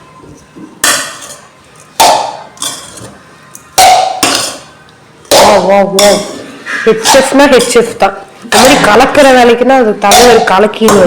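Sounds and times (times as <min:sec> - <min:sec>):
metal spoon clanking on pot: 0:00.8 - 0:03.1, 0:03.8 - 0:08.0.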